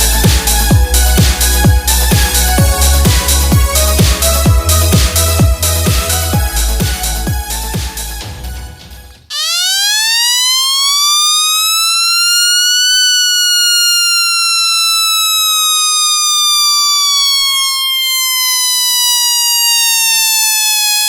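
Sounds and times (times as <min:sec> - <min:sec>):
electronic music: 0:00.0 - 0:08.1, 0:09.3 - 0:21.0
buzzy electronic siren tone: 0:09.3 - 0:21.0.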